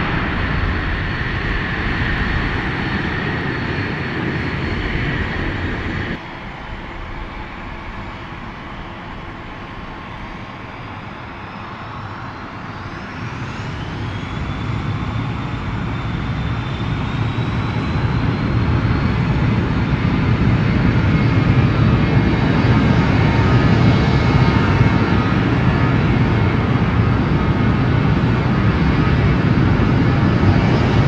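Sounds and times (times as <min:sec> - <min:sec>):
high engine whine: 0:00.0 - 0:19.2
airliner engines: 0:00.0 - 0:31.0.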